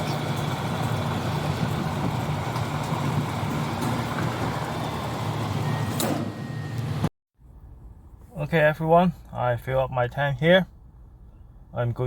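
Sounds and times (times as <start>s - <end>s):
fuel pump humming and hissing: 0.0s - 7.0s.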